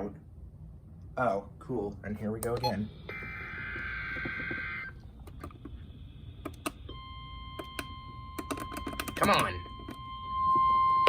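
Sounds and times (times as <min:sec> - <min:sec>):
steady warning alarm tone: 0:02.6 - 0:05.0, 0:05.7 - 0:11.0.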